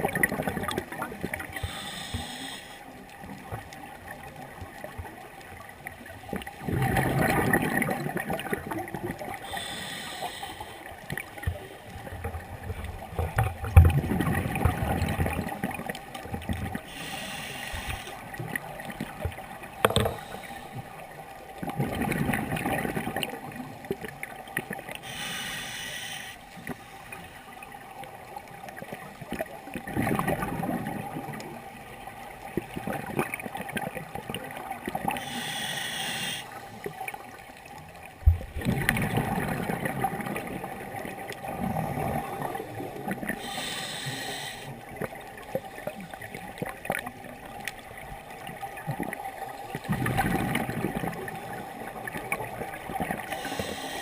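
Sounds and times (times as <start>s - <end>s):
hissing regulator inhale: 1.6s - 2.9s, 9.4s - 11.0s, 16.9s - 18.3s, 19.8s - 20.9s, 25.0s - 27.5s, 35.2s - 37.0s, 43.4s - 44.8s, 53.3s - 54.0s
rumbling exhaled bubbles: 6.3s - 9.4s, 12.4s - 16.8s, 21.6s - 24.3s, 29.7s - 31.6s, 38.2s - 43.4s, 48.7s - 53.3s.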